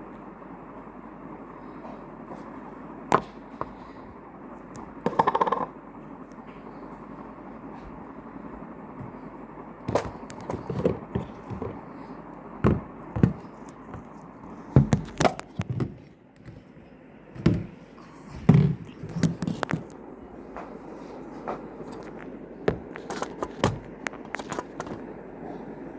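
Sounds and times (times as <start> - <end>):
game pieces knocking and clicking: 5.1 - 5.7.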